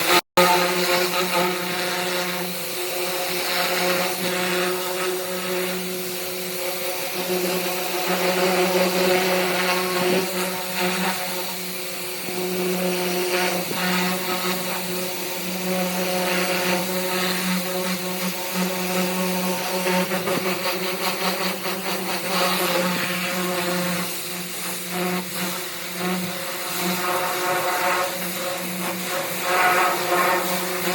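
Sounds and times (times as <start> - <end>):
high-pressure water spray hissing: 0.0 - 30.9
pressure washer motor drone: 0.0 - 30.9.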